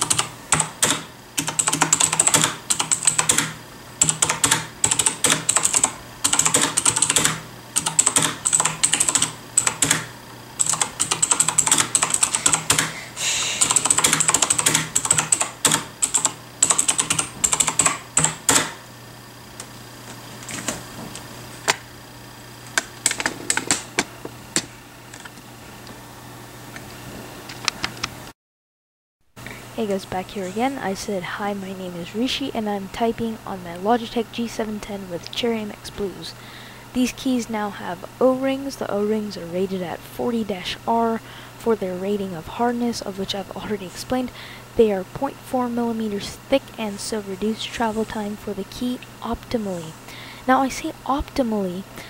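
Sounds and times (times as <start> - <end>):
typing on mechanical keyboard: 0.0 - 12.9, 13.6 - 18.7.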